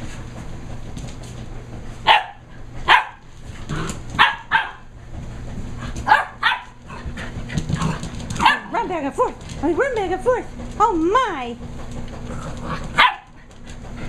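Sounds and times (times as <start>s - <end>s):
puppies barking and yipping: 6.0s - 8.8s, 12.9s - 13.6s.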